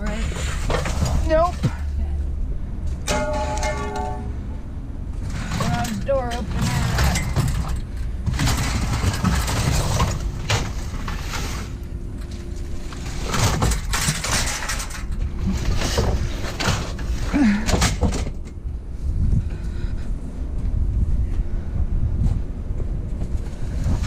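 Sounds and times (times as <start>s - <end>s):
scrap metal clanking and rattling: 0.0s - 1.9s, 2.9s - 4.6s, 5.2s - 18.6s
low rumble: 18.4s - 24.0s.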